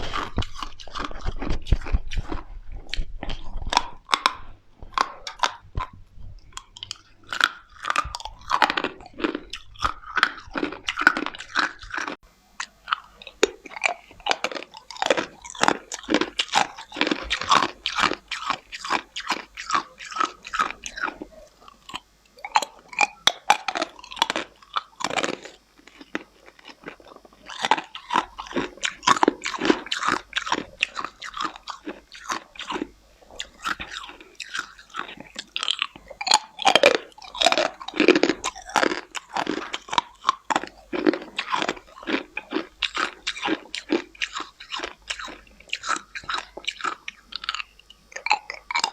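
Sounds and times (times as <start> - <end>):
person chewing ice: 0.0 - 48.9.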